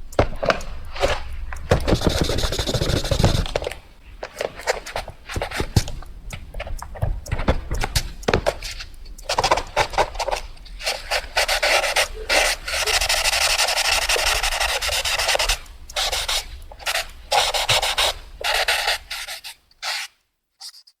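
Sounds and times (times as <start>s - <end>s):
pencil scratching on paper: 0.2s - 6.0s, 7.2s - 20.9s.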